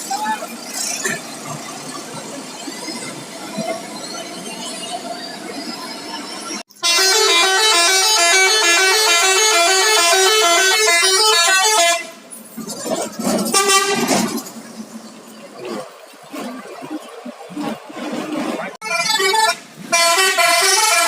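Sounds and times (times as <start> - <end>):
bus multi-tone air horn melody: 6.7 - 12.2, 13.4 - 14.4, 18.8 - 21.0.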